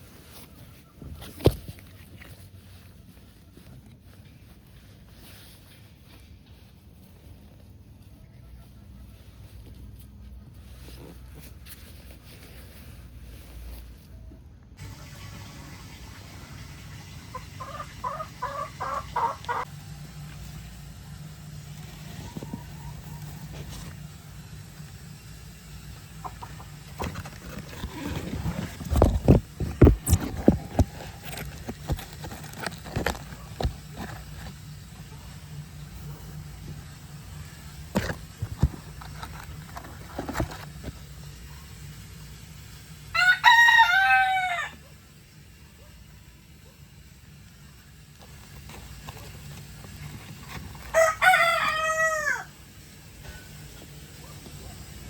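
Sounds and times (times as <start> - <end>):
chickens clucking: 14.8 - 19.7, 26.0 - 27.5
rooster crowing: 43.1 - 44.9, 50.9 - 52.6.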